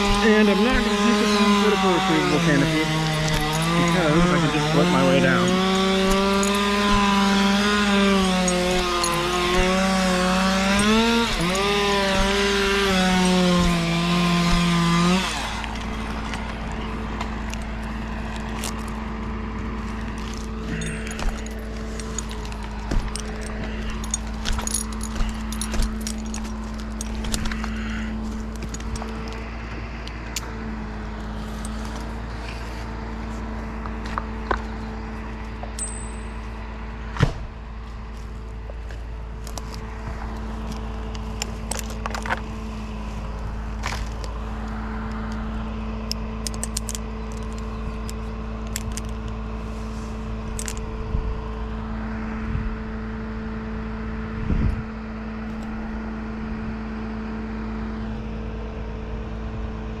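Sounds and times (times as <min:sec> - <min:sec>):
engine running steadily: 0:00.0 - 1:00.0
metallic clinks and knocks: 0:05.4 - 0:13.8, 0:20.0 - 0:27.6, 0:35.7 - 0:36.6, 0:46.4 - 0:49.2.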